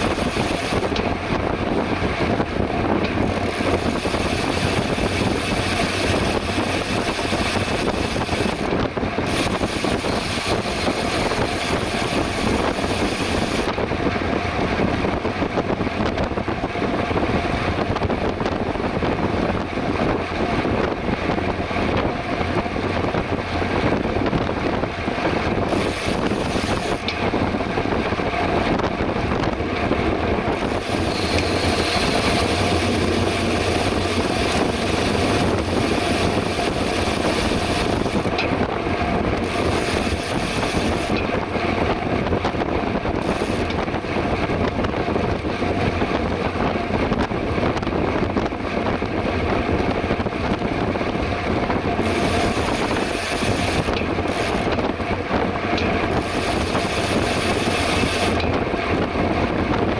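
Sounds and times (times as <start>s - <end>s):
wind rushing over microphone: 0.0s - 59.9s.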